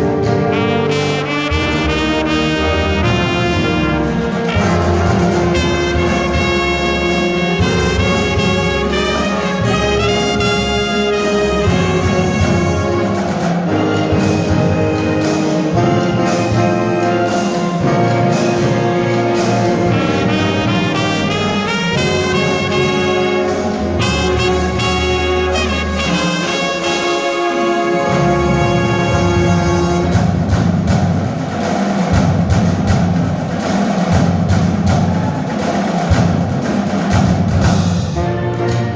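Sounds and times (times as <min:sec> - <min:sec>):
marching percussion hits: 0:00.0 - 0:38.9
trumpets and trombones: 0:00.0 - 0:38.9.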